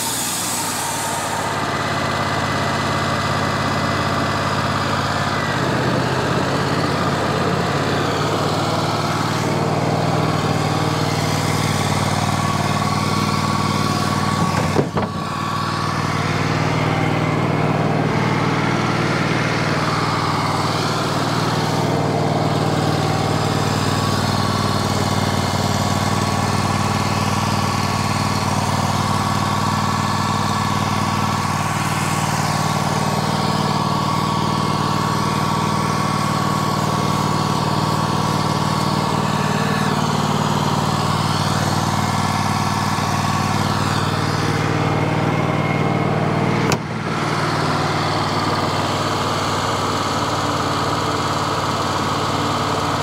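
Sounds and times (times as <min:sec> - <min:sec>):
sawmill engine running: 0:00.0 - 0:53.0.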